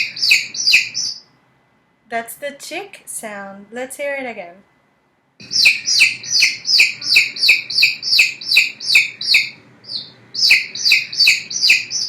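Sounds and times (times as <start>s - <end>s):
baby chick peeping: 0.0s - 1.3s, 5.4s - 12.0s.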